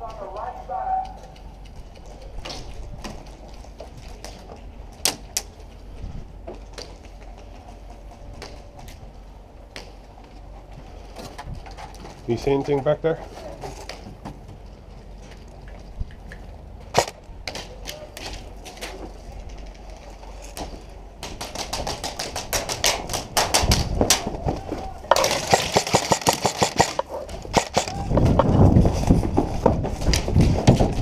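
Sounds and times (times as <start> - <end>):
airsoft guns firing: 16.9 - 17.7, 25.1 - 28.1.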